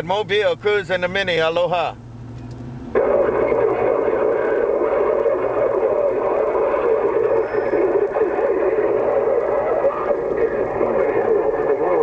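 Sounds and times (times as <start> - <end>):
garbled radio transmission: 3.0 - 12.0.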